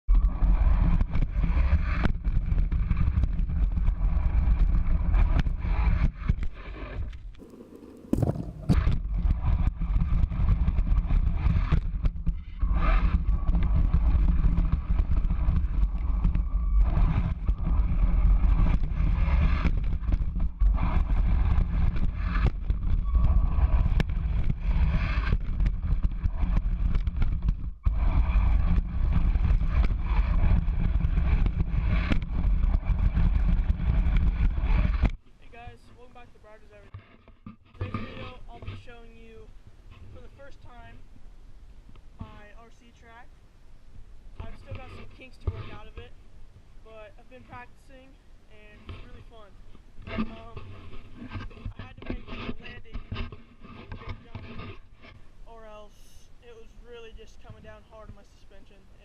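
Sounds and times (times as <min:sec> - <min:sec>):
heavy low rumble: 0:00.1 - 0:36.9, 0:46.8 - 0:58.3
knocks and bumps: 0:00.9 - 0:35.2.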